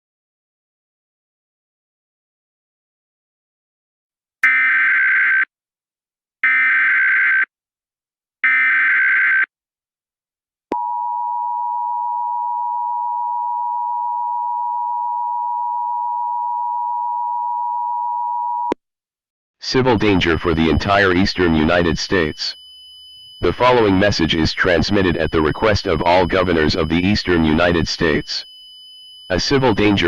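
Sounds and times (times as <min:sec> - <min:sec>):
screeching data tones: 0:19.7 - 0:30.0
two-tone attention signal: 0:19.8 - 0:30.0.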